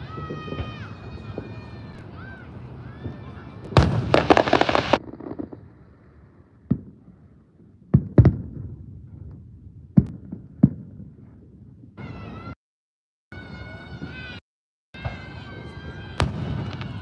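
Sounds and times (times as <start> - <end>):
fireworks crackling burst: 0.0 - 6.3, 15.2 - 17.0
distant firework booms: 3.0 - 11.8, 16.2 - 17.0.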